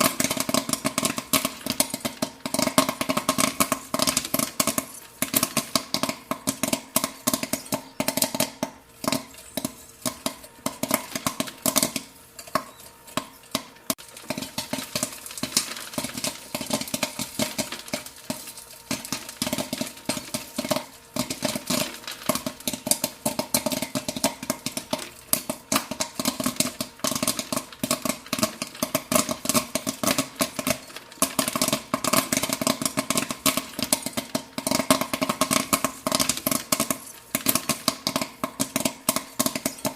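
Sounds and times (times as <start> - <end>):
popcorn kernels popping: 0.0 - 39.9.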